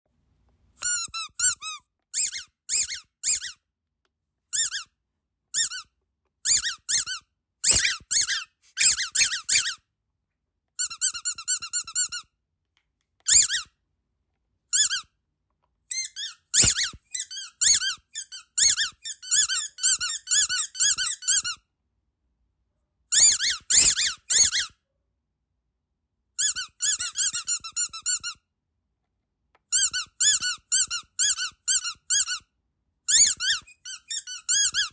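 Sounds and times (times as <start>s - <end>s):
rubber duck toy squeaking: 0.8s - 3.7s, 4.5s - 9.8s, 10.8s - 12.3s, 13.2s - 13.8s, 14.7s - 15.1s, 15.9s - 21.6s, 23.1s - 24.8s, 26.4s - 28.4s, 29.7s - 32.5s, 33.1s - 34.9s.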